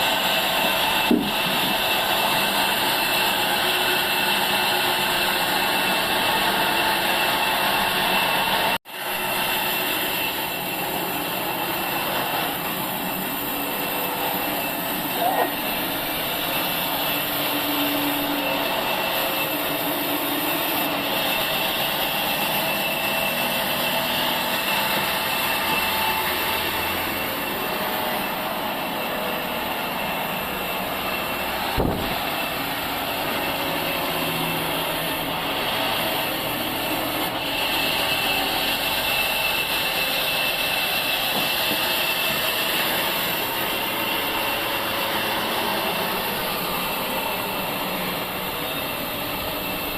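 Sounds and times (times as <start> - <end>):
sawmill machinery running: 0.0 - 49.9
sharp knock: 1.1 - 1.4.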